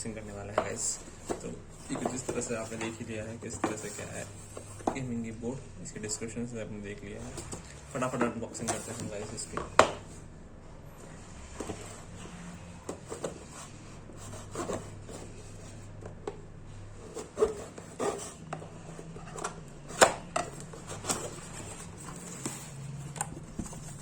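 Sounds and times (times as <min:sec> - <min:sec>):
packaging rubbing and scraping: 0:00.0 - 0:05.1, 0:05.9 - 0:10.3, 0:11.1 - 0:16.0, 0:17.0 - 0:24.0.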